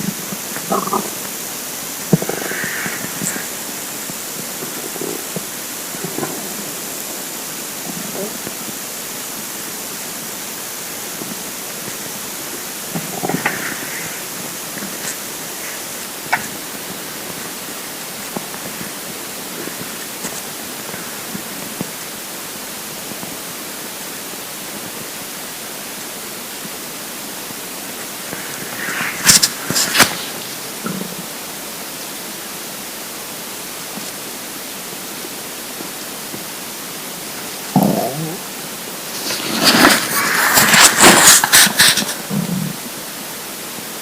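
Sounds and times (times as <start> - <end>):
stomach rumbles: 0.0 - 22.2, 27.8 - 31.5, 37.3 - 43.0
steady recording hiss: 0.0 - 44.0
sharp clicks and crackles: 28.3 - 31.2, 39.2 - 42.4.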